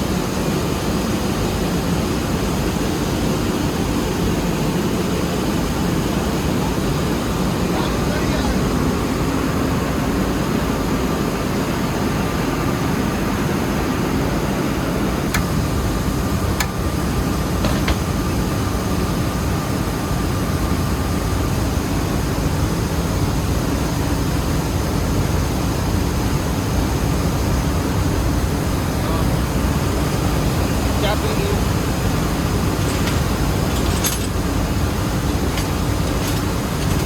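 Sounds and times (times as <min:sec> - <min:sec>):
faint machine whine: 0:00.0 - 0:37.0
mill machinery running: 0:13.8 - 0:21.7, 0:28.6 - 0:37.0.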